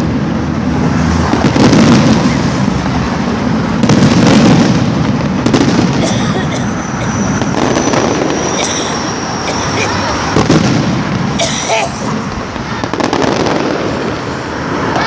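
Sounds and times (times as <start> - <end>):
fireworks bangs and crackling: 0.0 - 15.0.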